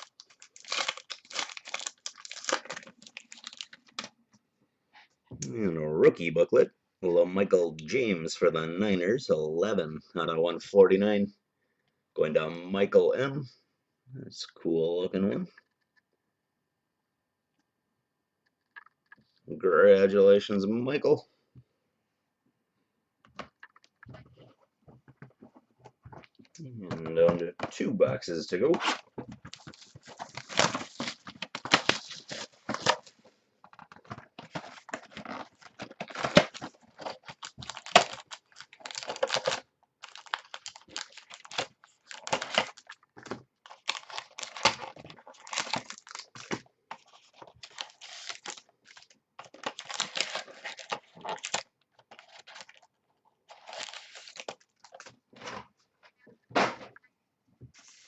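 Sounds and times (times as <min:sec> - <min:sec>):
packaging ripping and rustling: 0:00.0 - 0:04.1, 0:28.8 - 0:33.1, 0:33.9 - 0:52.9, 0:53.5 - 0:55.1.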